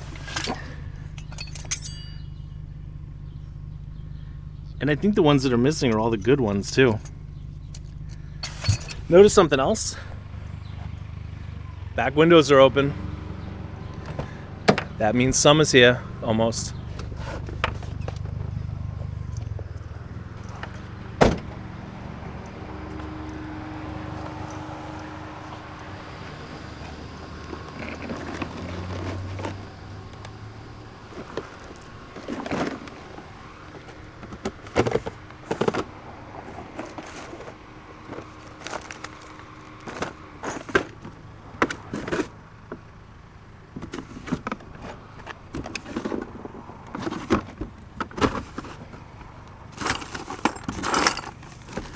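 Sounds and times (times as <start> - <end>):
low vehicle rumble: 0.0 - 51.9
scrap metal clanking: 0.2 - 2.5, 8.4 - 9.2, 49.7 - 51.9.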